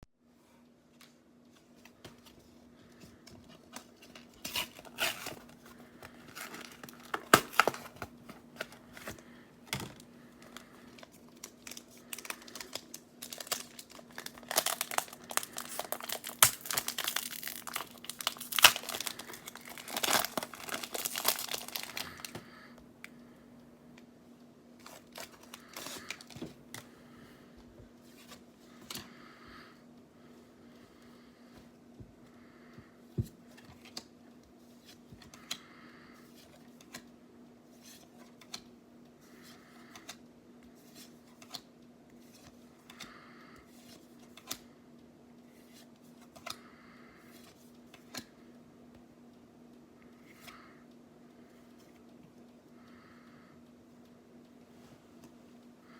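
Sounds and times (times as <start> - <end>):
foil wrapper crinkling and tearing: 3.9 - 9.2, 10.6 - 22.4.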